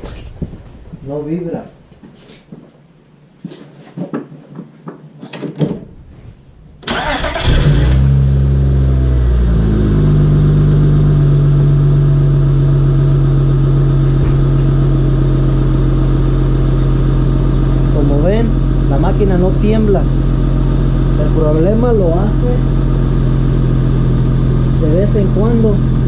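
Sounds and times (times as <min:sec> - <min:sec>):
car engine starting and idling: 0:05.8 - 0:26.0.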